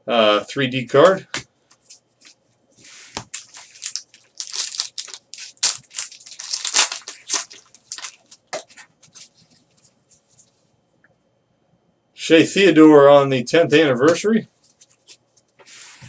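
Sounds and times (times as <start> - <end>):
card packs crinkling and rustling: 3.0 - 10.0.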